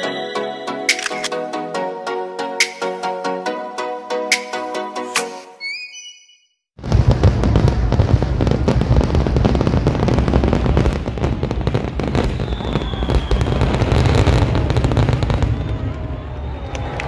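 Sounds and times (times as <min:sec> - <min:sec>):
fireworks crackling: 0:06.8 - 0:15.9
fireworks deep booms: 0:06.8 - 0:16.4.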